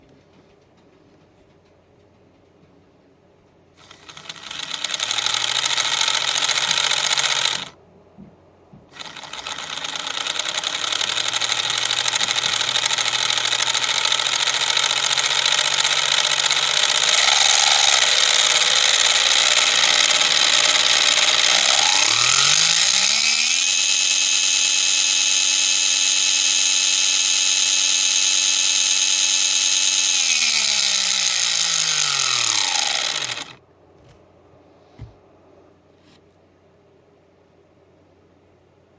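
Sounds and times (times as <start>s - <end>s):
plastic gear transmission whirring: 4.4s - 7.8s, 9.0s - 34.2s
rising whine: 17.0s - 25.8s.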